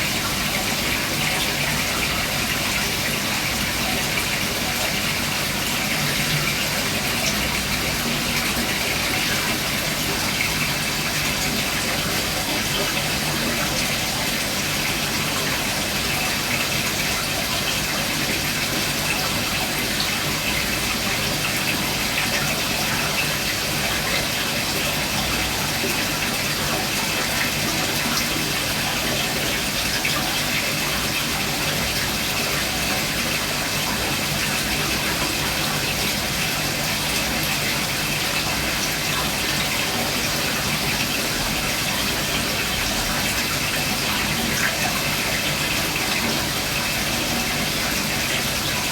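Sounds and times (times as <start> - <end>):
aquarium filter water gushing: 0.0 - 48.9.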